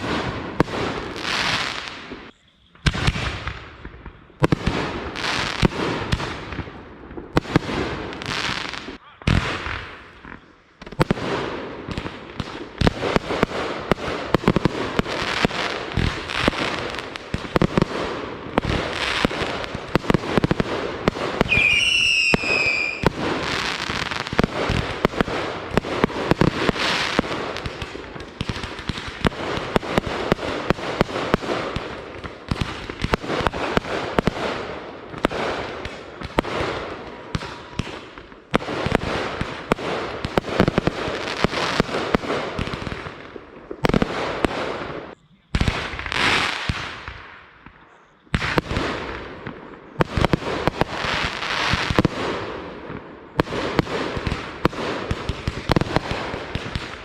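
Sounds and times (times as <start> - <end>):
firework bangs: 0.0 - 57.0
fireworks crackling and popping: 0.0 - 57.0
firework high whistle: 21.4 - 24.0.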